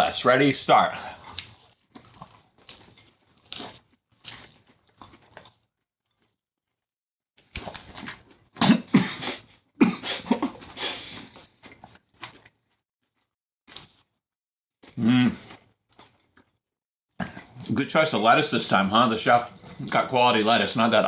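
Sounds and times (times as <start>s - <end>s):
crunching and chewing salad: 0.4s - 6.8s, 7.4s - 8.6s, 10.6s - 14.2s, 14.8s - 16.6s.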